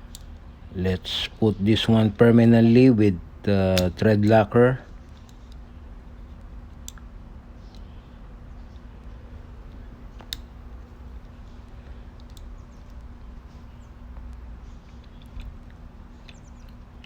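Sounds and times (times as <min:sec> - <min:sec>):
steady low hum: 0:00.0 - 0:17.0
handling small parts clicks: 0:00.1 - 0:00.4, 0:11.2 - 0:13.1.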